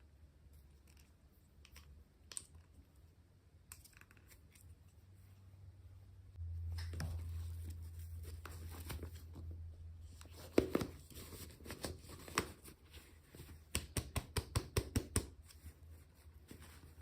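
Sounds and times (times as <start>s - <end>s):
steady low hum: 4.7s - 11.6s.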